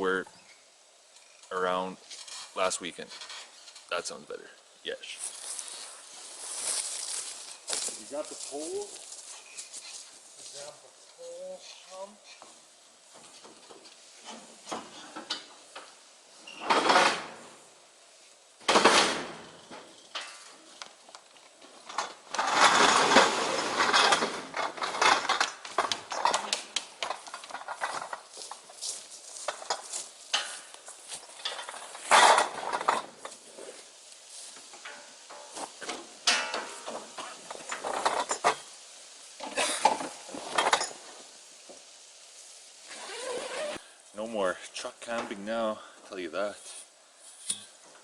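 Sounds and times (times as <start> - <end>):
tent fabric rustling and scraping: 5.0 - 10.8, 22.4 - 41.6, 42.3 - 43.8
tent poles clinking: 19.6 - 38.8, 39.4 - 41.2, 42.9 - 43.8.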